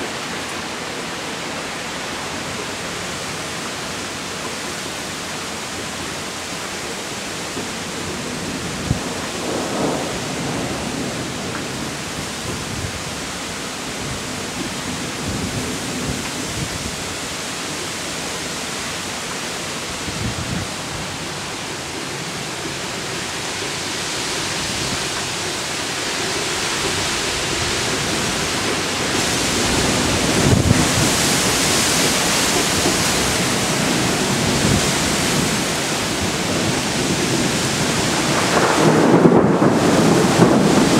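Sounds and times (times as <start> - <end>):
heavy rain: 0.0 - 40.9
thunder rumbling: 8.0 - 13.4, 20.0 - 40.9.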